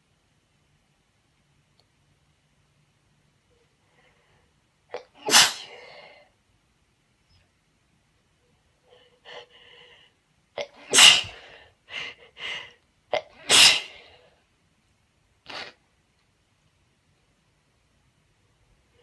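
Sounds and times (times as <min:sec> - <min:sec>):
woman sneezing: 0:05.0 - 0:06.0, 0:10.6 - 0:11.5, 0:13.2 - 0:14.0
woman breathing: 0:08.8 - 0:10.2, 0:11.2 - 0:12.8.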